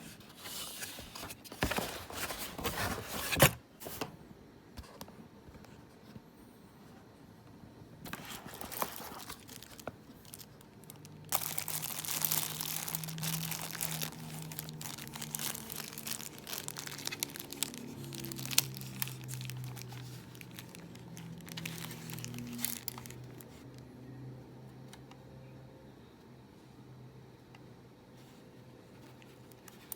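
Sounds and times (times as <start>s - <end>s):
packaging crinkling and rustling: 8.0s - 23.8s.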